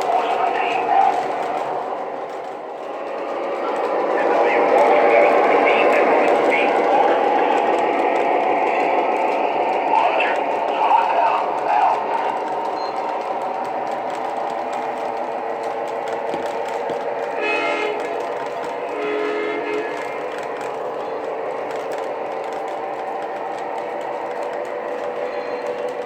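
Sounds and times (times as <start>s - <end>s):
model train horn: 17.4s - 18.0s, 18.9s - 20.0s.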